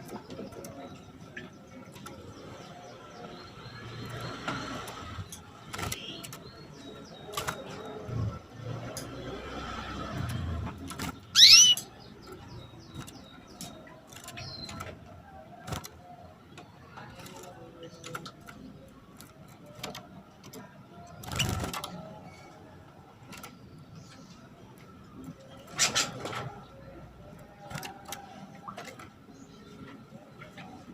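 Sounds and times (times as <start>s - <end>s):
canary call: 11.4s - 11.8s.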